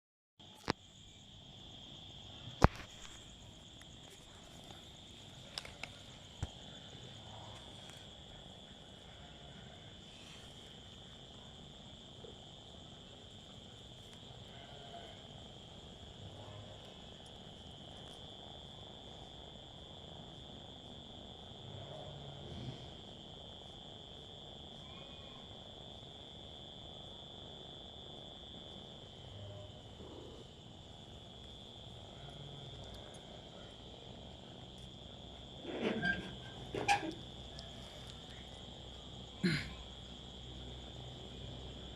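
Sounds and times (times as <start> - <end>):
insects trilling: 0.4 - 41.9.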